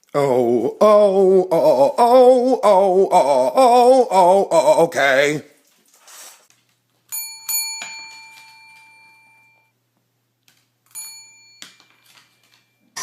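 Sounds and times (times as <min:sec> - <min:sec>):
small bell ringing: 0:07.1 - 0:09.7, 0:10.9 - 0:13.0.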